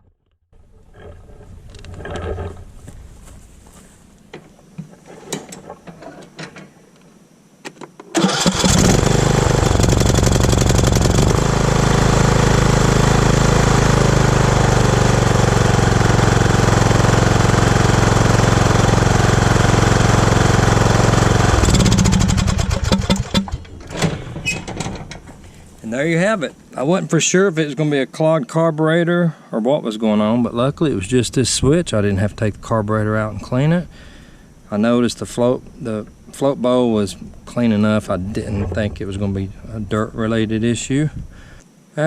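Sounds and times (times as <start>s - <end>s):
lawn mower engine running: 8.2s - 25.9s, 30.4s - 36.2s.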